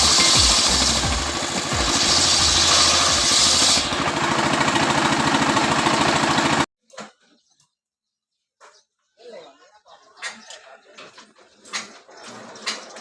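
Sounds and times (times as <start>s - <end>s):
loud hiss: 0.0s - 4.2s
chainsaw cutting wood: 0.0s - 6.7s.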